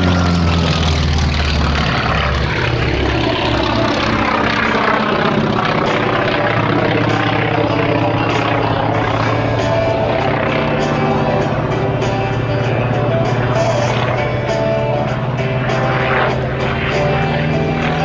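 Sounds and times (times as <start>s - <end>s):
propeller aircraft engine droning: 0.0s - 18.0s.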